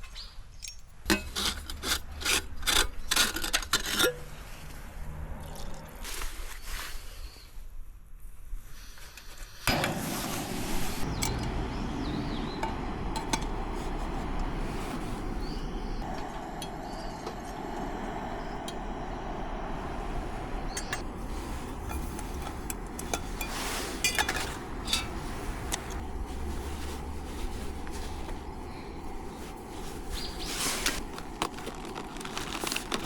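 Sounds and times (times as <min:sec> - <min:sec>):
steady low hiss: 0:09.7 - 0:33.0
metal cookware clinking: 0:21.8 - 0:26.0.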